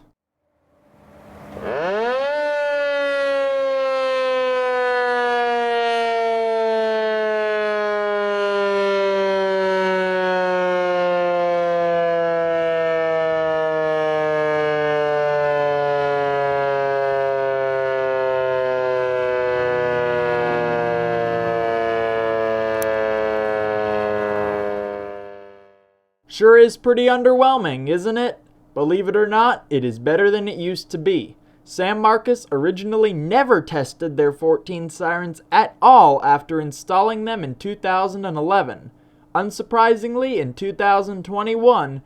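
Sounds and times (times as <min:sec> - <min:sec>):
warning siren steady tone: 0:00.0 - 0:26.2.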